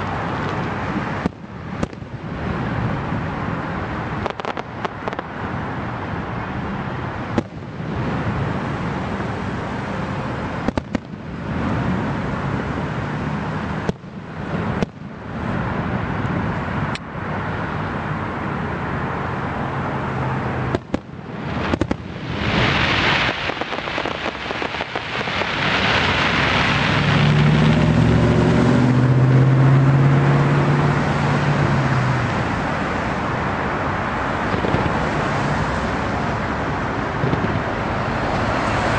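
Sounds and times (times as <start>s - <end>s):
fireworks going off: 0.0s - 3.0s, 4.0s - 5.4s, 7.2s - 8.6s, 10.5s - 11.6s, 13.8s - 15.1s, 20.6s - 28.6s, 34.4s - 38.9s
vehicle engine hum: 0.0s - 38.9s.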